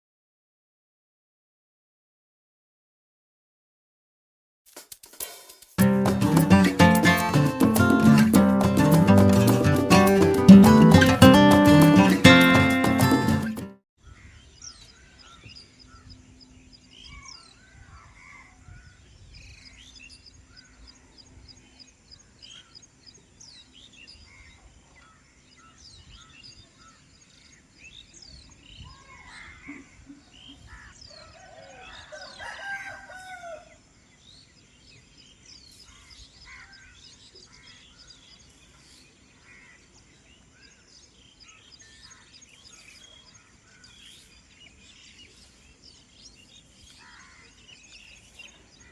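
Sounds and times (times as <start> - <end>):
small birds chirping: 5.8 - 33.2, 34.1 - 48.9
rooster crowing: 31.1 - 33.8.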